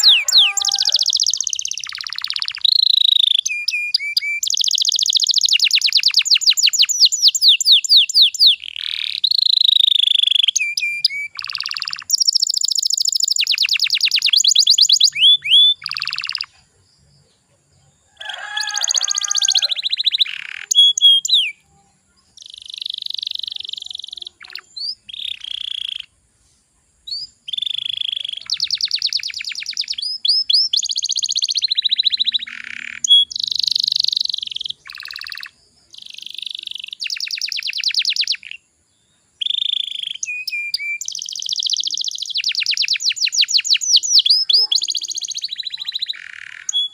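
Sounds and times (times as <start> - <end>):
canary singing: 0.0 - 26.2, 27.1 - 38.6, 39.4 - 46.9.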